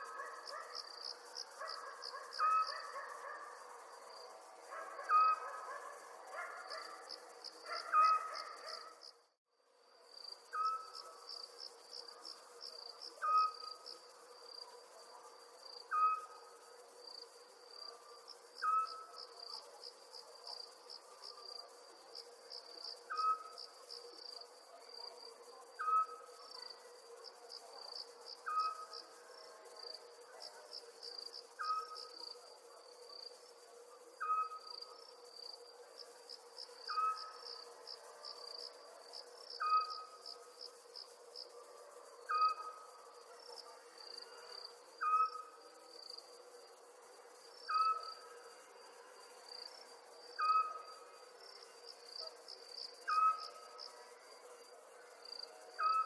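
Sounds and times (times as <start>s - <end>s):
crickets chirping: 0.0s - 56.0s
animal call: 4.7s - 7.0s, 7.7s - 9.0s.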